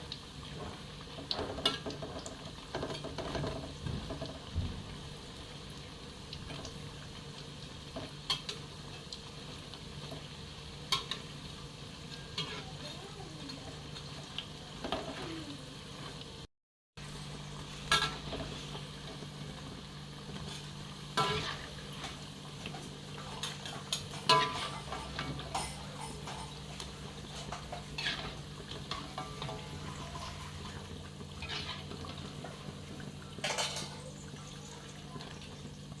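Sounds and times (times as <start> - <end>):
food sizzling in a pan: 0.0 - 36.0
metal utensil clinking on pan: 23.2 - 26.8, 33.4 - 34.1.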